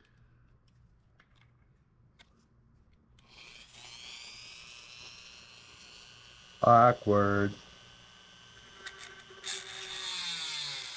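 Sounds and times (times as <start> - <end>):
rotary tool whining: 3.2 - 10.9.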